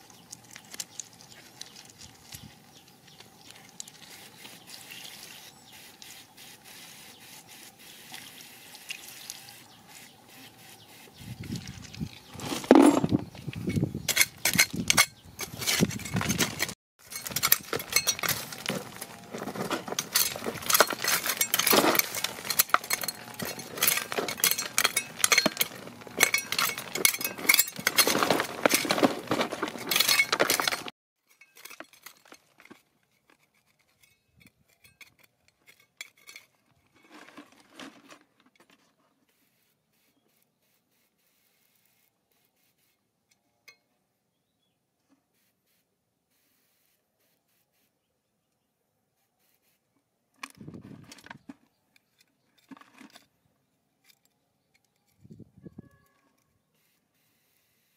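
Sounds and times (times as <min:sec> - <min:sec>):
stones clinking and scraping: 0:00.0 - 0:07.0, 0:07.6 - 0:39.1.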